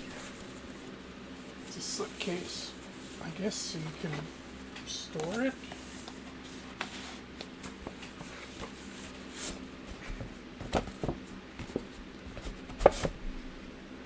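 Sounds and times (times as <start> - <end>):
cardboard scraping and rubbing: 5.2 - 13.2.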